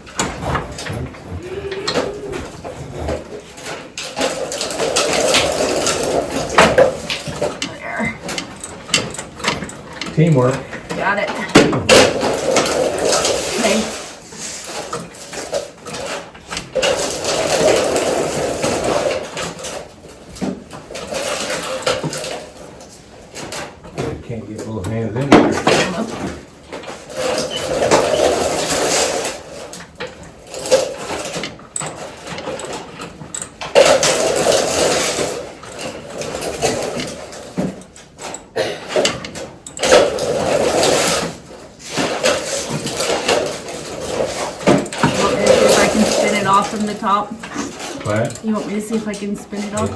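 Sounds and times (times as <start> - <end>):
tools clicking and scraping metal: 0.0 - 24.0, 25.6 - 49.9
hand tools scraping metal: 38.3 - 49.9.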